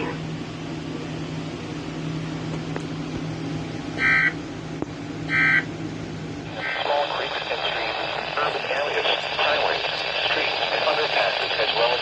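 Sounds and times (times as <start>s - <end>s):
low hum: 0.0s - 12.0s
radio hiss: 6.4s - 12.0s.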